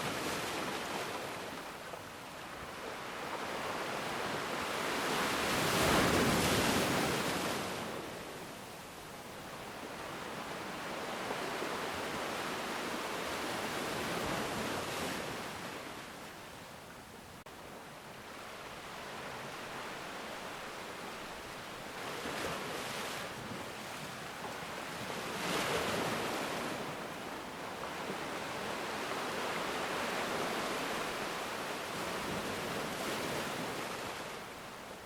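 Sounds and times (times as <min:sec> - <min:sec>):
ocean waves breaking: 0:00.0 - 0:08.1, 0:18.2 - 0:34.8.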